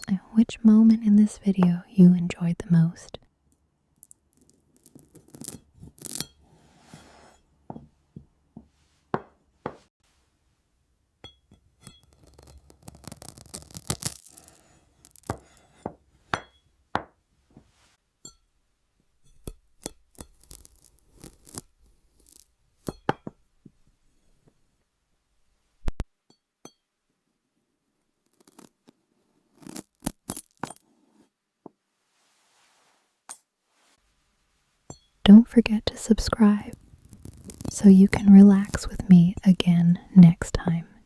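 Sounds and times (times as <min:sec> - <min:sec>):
glass crunching and clinking: 0:04.0 - 0:06.5, 0:11.2 - 0:15.8, 0:19.3 - 0:23.3, 0:29.6 - 0:30.8, 0:36.7 - 0:37.7.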